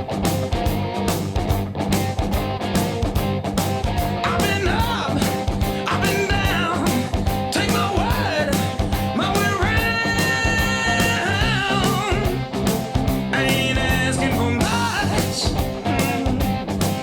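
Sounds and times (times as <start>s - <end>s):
electric guitar: 0.0s - 17.0s
rock song: 0.0s - 17.0s
steady drum beat: 0.0s - 17.0s
person singing: 4.2s - 12.4s, 13.3s - 16.6s.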